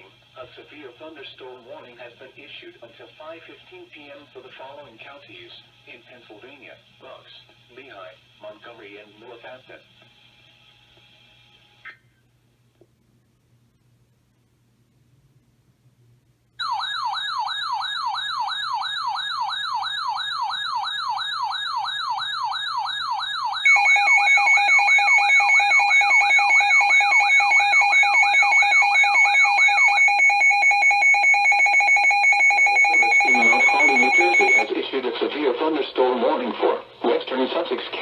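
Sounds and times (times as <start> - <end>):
warbling alarm tone: 16.6 - 34.7
two-tone attention signal: 23.7 - 34.7
person speaking: 32.7 - 38.0.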